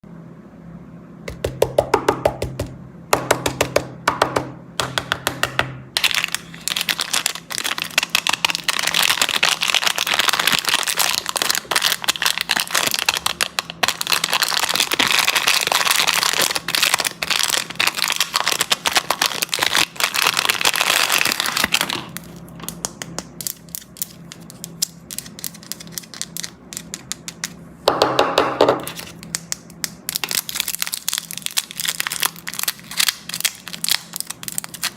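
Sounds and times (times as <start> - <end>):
plastic wrappers crinkling: 6.0 - 27.6, 28.8 - 34.9.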